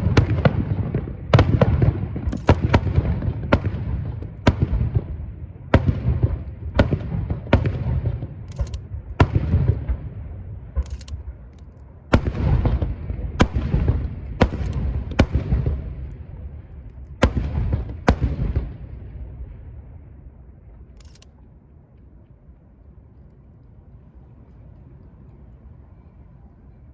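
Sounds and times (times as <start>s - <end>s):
fireworks booming: 0.0s - 11.5s, 12.1s - 20.3s.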